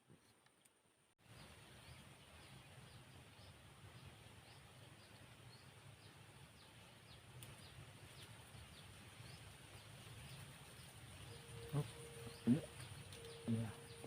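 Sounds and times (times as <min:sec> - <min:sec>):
high insect whine: 0:11.2 - 0:14.0.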